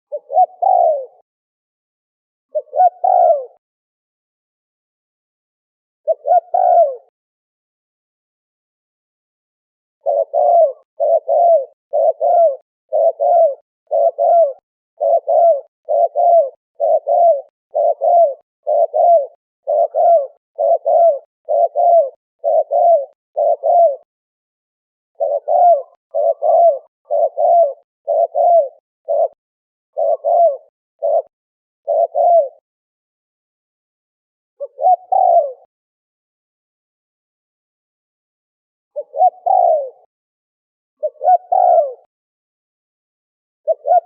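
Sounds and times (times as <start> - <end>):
turtle dove cooing: 0.1 - 1.2, 2.5 - 3.6, 6.0 - 7.1, 10.0 - 24.1, 25.2 - 32.6, 34.6 - 35.7, 38.9 - 40.1, 41.0 - 42.1, 43.6 - 44.0.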